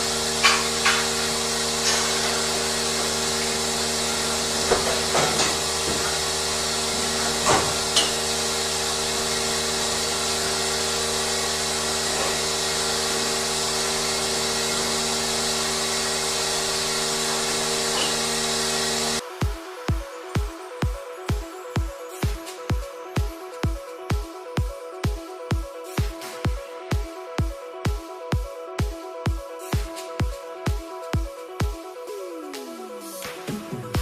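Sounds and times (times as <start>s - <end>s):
metallic knocks and clanks: 4.6s - 6.2s.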